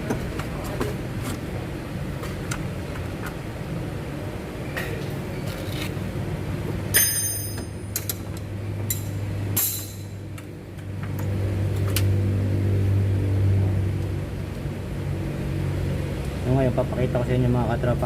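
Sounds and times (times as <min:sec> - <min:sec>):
low engine-like hum: 0:00.0 - 0:18.0
metallic clinks and taps: 0:06.9 - 0:08.2.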